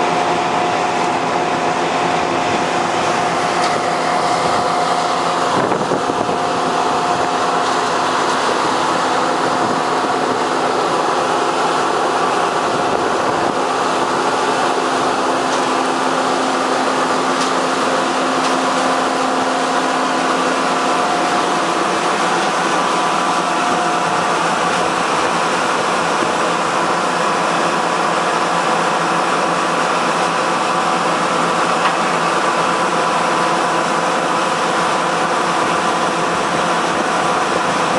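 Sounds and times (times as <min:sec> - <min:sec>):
harvesting machinery running: 0:00.0 - 0:37.9
low machine hum: 0:00.0 - 0:37.9
machine whine: 0:00.0 - 0:37.9.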